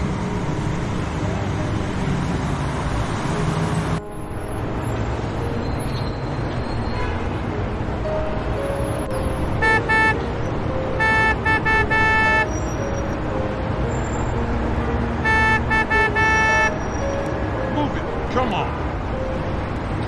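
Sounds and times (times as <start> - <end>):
traffic rumble: 0.0 - 20.0
car horn honking: 9.6 - 13.1, 15.2 - 17.1.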